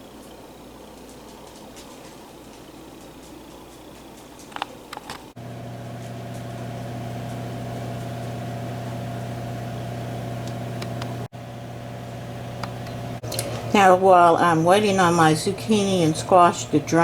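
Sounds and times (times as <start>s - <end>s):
steady motor hum: 5.4s - 17.0s.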